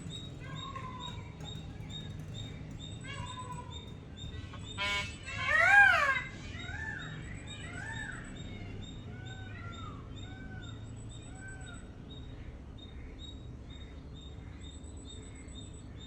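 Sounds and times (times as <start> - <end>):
birds mewing calls: 0.0 - 6.4.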